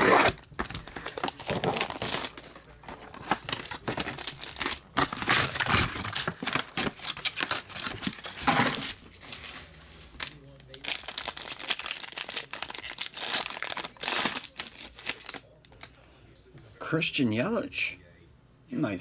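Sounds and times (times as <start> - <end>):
packaging being torn open: 0.0 - 9.1, 10.2 - 15.9
wrapper crinkling: 0.0 - 16.0.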